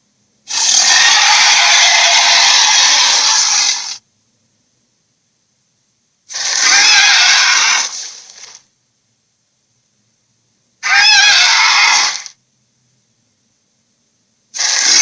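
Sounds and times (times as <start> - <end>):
harsh rasping dragon roar: 0.5 - 4.0, 6.3 - 8.1, 10.8 - 12.3, 14.6 - 15.0.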